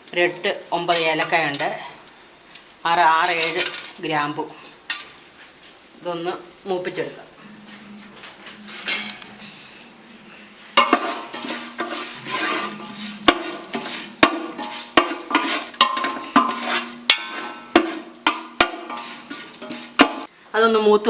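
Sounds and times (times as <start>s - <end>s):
spices sizzling in hot oil: 0.0s - 7.4s, 10.0s - 20.3s
spoon clinking and scraping pot: 10.8s - 20.3s.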